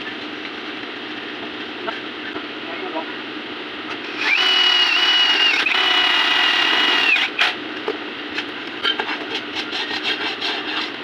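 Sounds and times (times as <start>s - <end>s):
power tool whining: 4.0s - 7.4s.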